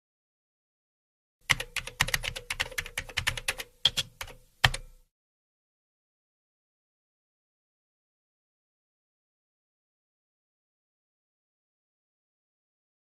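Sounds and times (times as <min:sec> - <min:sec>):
keyboard typing: 0:01.5 - 0:05.0.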